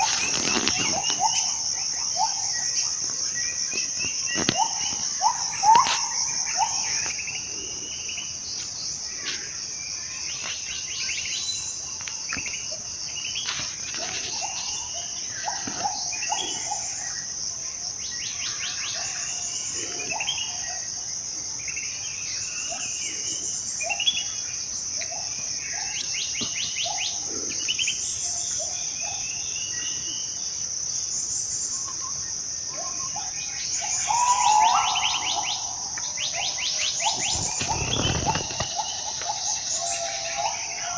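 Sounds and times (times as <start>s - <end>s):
high-pitched insect drone: 0.0s - 17.5s, 31.6s - 40.9s
birds calling in whistles and trills: 0.0s - 40.9s.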